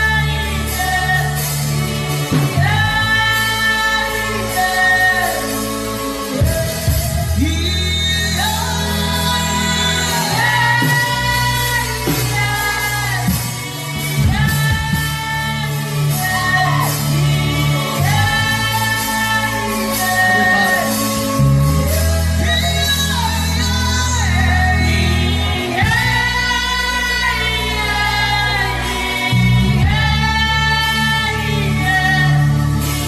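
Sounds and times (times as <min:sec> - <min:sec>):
man humming a wordless melody: 0:18.0 - 0:24.2.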